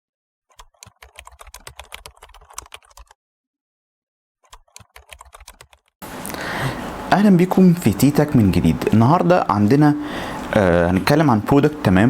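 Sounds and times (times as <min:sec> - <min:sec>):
mechanical keyboard clicking: 0:00.5 - 0:03.1, 0:04.4 - 0:05.8.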